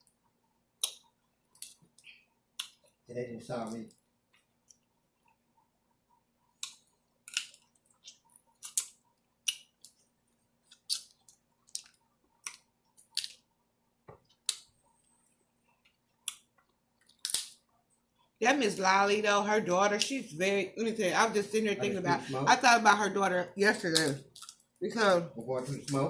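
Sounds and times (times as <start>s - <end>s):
faint steady hum: 0.0s - 26.0s
chewing and handling food: 6.4s - 18.4s, 24.2s - 24.8s.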